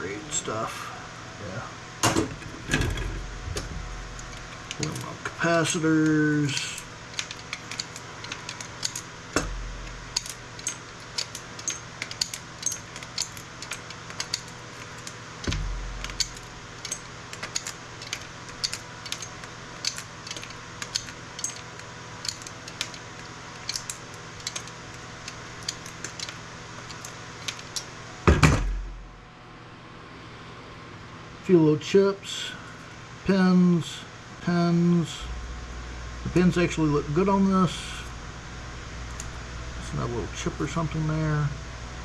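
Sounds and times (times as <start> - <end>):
small hard parts clicking: 4.1 - 27.9.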